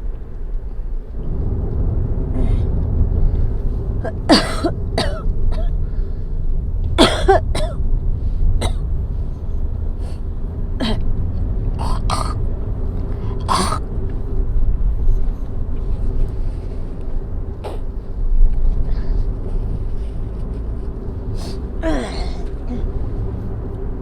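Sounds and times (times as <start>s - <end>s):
car cabin rumble: 0.0s - 24.0s
woman clearing throat and coughing: 4.3s - 5.7s, 7.0s - 7.8s, 11.8s - 12.4s, 13.4s - 13.8s.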